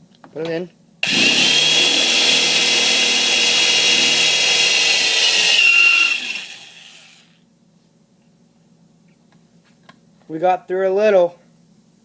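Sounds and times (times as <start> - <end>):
electric drill drilling into metal: 1.0 - 7.4.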